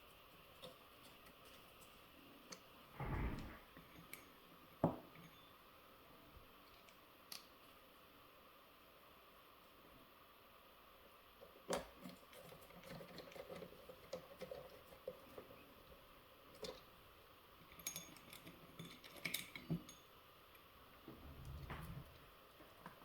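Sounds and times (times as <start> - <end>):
small parts clicking and tapping: 6.6 - 7.6, 11.4 - 15.6, 16.5 - 16.9, 17.6 - 20.7.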